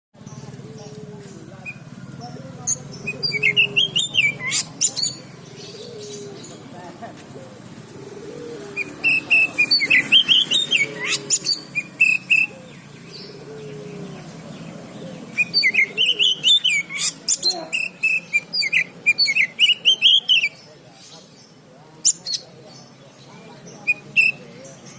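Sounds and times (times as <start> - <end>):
low murmur: 0.2 - 24.9
bird singing whistled chattering notes: 1.6 - 6.6, 8.8 - 13.5, 14.4 - 22.9, 23.7 - 24.9.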